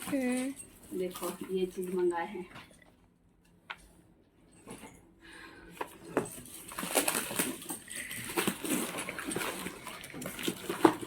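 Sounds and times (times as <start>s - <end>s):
plastic wrappers crinkling: 0.0s - 2.3s, 5.8s - 11.0s.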